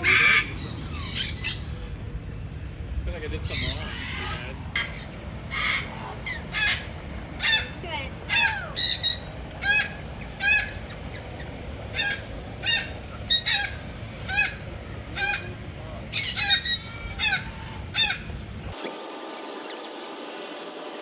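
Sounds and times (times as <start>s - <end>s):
parrot squawking: 0.0s - 1.7s, 3.5s - 14.6s, 15.2s - 18.3s.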